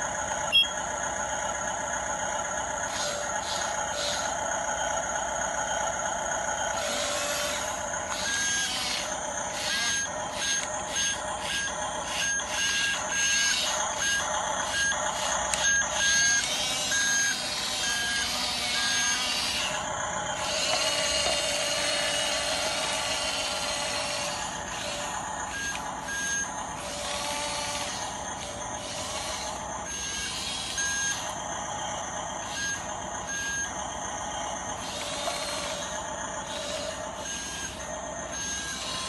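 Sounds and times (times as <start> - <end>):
toy motors and gears whirring: 0.0 - 39.0
reversing beep: 0.5 - 0.9, 8.2 - 19.4, 25.4 - 26.6, 28.9 - 39.0.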